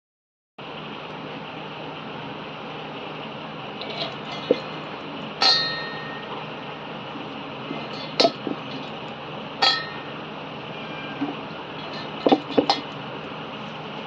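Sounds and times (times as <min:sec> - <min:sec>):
metal utensil clinking on pot: 0:05.4 - 0:06.3, 0:09.6 - 0:10.1.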